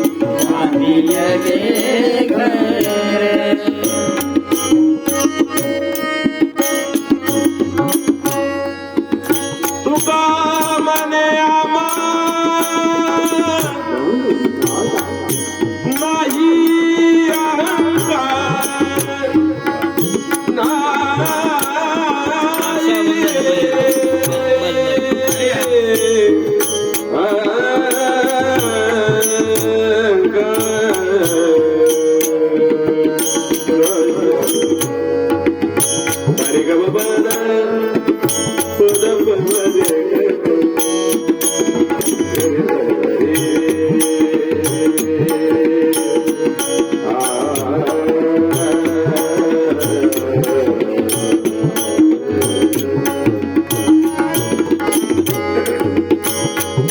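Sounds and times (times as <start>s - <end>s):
continuous percussion: 0.0s - 56.9s
devotional melody: 0.0s - 56.9s.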